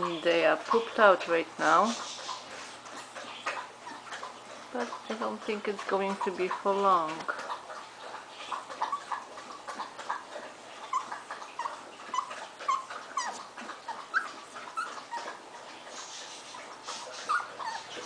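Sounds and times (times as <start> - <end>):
puppies whimpering and squealing: 1.9 - 5.3, 7.4 - 18.0.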